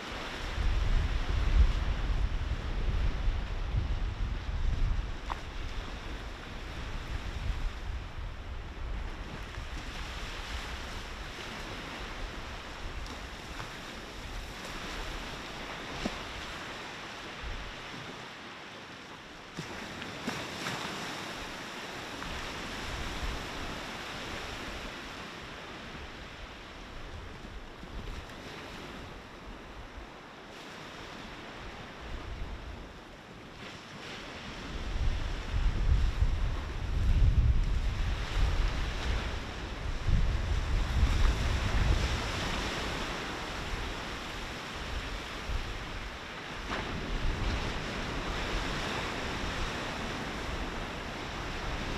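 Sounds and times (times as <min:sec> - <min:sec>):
wind buffeting microphone: 0:00.0 - 0:16.7, 0:34.4 - 0:51.9
sea waves breaking on shore: 0:00.0 - 0:51.9.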